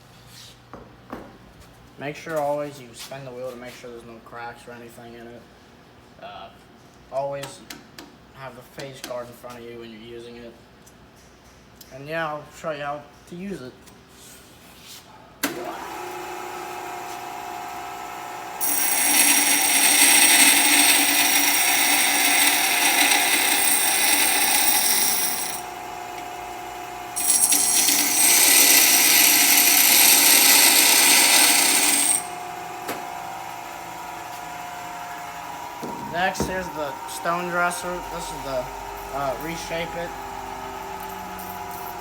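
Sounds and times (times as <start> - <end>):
bench grinder motor humming: 17.6 - 42.0
metal grinding on stone wheel: 18.6 - 25.8, 27.2 - 32.4, 41.0 - 42.0.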